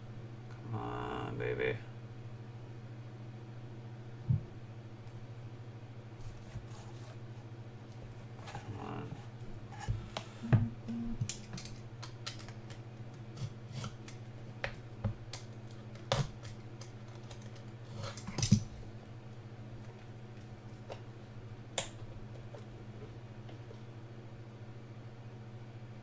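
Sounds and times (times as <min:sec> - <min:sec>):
steady low hum: 0:00.0 - 0:26.0
packaging clicks and rustles: 0:15.3 - 0:18.5.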